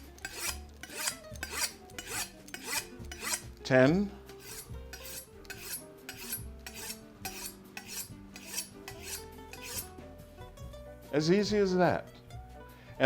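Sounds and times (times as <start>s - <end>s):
knife rasping through sharpener: 0.0s - 3.5s, 4.4s - 9.9s.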